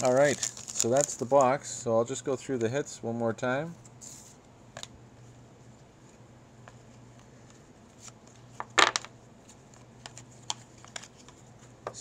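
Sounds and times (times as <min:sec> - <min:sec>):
trading cards being handled: 0:00.0 - 0:01.6, 0:05.8 - 0:12.0
steady low hum: 0:00.0 - 0:12.0
cards clacking on a table: 0:08.6 - 0:09.1.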